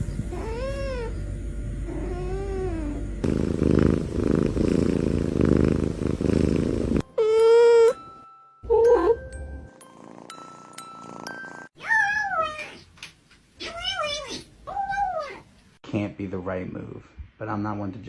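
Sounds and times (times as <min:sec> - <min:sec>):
cat purring: 0:01.8 - 0:07.1, 0:09.8 - 0:11.7.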